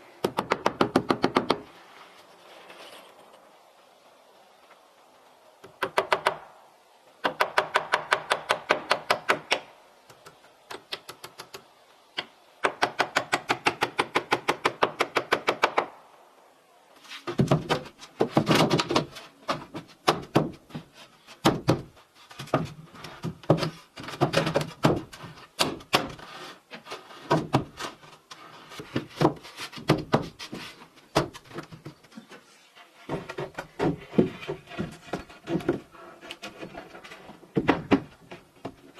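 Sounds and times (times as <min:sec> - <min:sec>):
irregular knocks and clatter: 0:17.3 - 0:26.2, 0:33.0 - 0:38.9.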